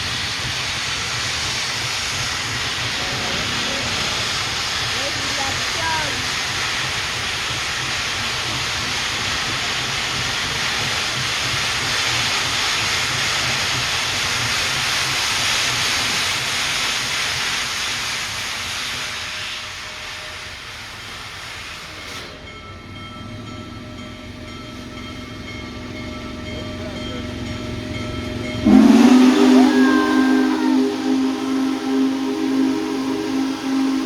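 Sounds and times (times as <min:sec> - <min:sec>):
loud steady steam hiss: 0:00.0 - 0:34.0
low train rumble: 0:00.0 - 0:34.0
faint train horn chord: 0:28.6 - 0:34.0.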